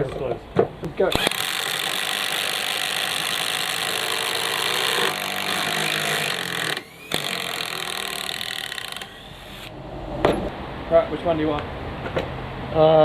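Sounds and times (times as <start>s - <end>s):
impact drivers hammering screws: 1.1s - 9.7s.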